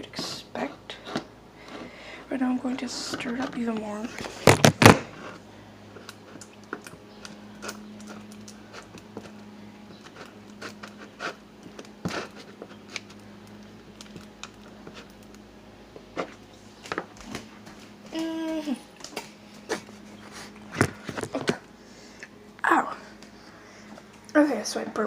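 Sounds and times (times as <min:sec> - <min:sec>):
faint steady hum: 0:00.0 - 0:25.0
spoon scraping sticky candy: 0:07.3 - 0:15.4.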